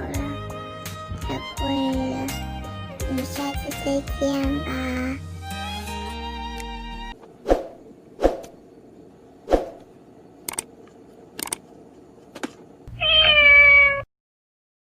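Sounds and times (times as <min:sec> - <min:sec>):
cat meowing: 0:12.9 - 0:14.1.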